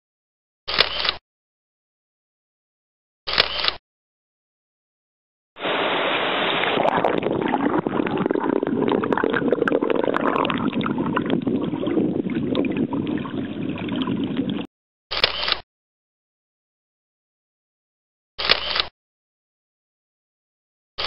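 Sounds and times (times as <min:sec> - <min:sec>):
rushing river water: 0:05.6 - 0:07.1.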